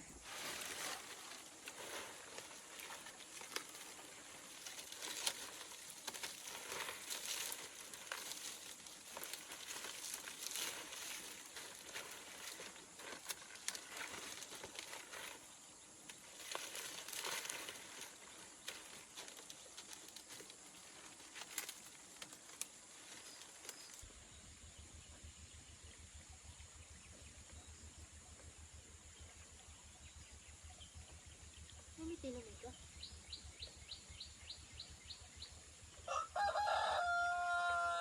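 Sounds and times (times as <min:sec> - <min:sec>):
dry leaves rustling: 0:00.0 - 0:24.2, 0:36.1 - 0:38.0.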